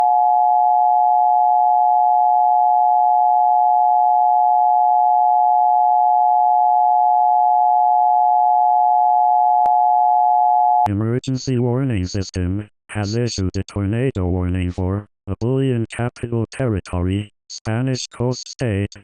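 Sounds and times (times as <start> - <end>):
emergency alert tone: 0.0 - 10.9.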